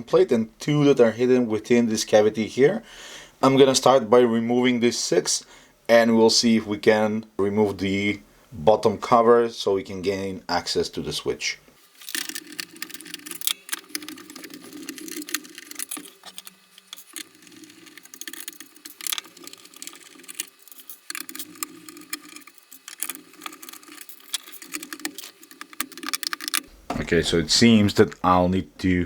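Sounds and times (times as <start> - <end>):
screws and plastic rattling: 11.9 - 27.1.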